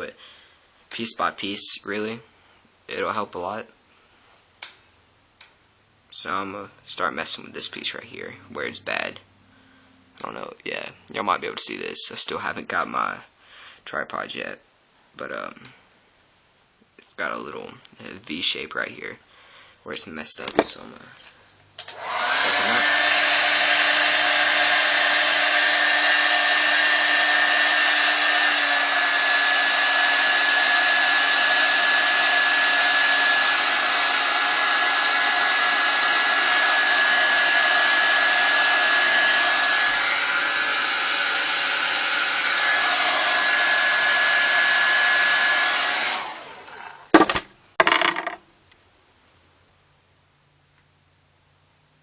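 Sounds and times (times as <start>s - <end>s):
hot-air blower whining: 21.8s - 47.2s.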